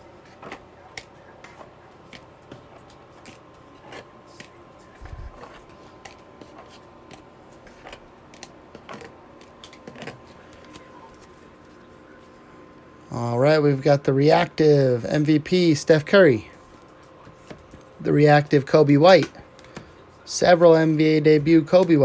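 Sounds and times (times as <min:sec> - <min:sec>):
faint steady hum: 0:00.0 - 0:22.0
cards clicking and tapping: 0:00.2 - 0:11.8, 0:16.6 - 0:18.0, 0:19.1 - 0:20.0.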